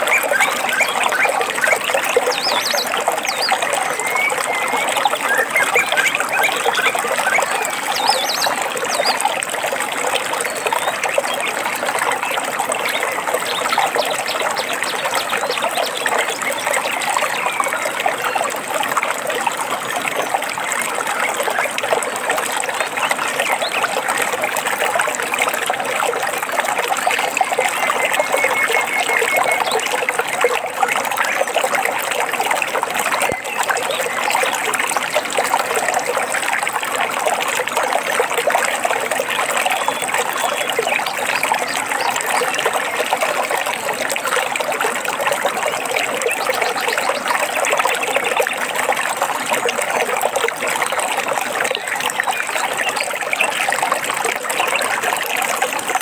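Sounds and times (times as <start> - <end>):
stream trickling over rocks: 0.0 - 56.0.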